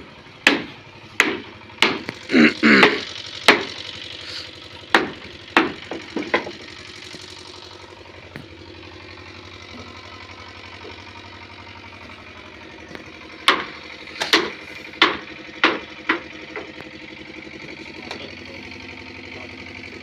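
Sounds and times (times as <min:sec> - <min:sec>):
engine running: 0:00.0 - 0:20.0
sharp knocks: 0:00.4 - 0:03.8, 0:04.9 - 0:06.6, 0:13.4 - 0:16.8.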